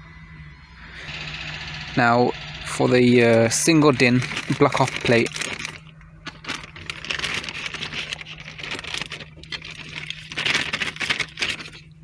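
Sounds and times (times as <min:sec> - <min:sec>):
steady low hum: 0:00.0 - 0:12.0
packaging rustling: 0:03.2 - 0:12.0.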